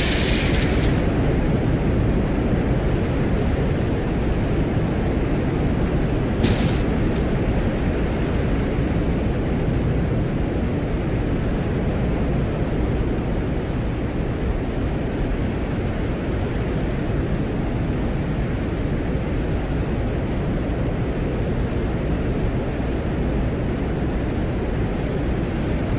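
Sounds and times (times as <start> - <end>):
static hiss: 0.0 - 10.7
low rushing noise: 0.0 - 10.9.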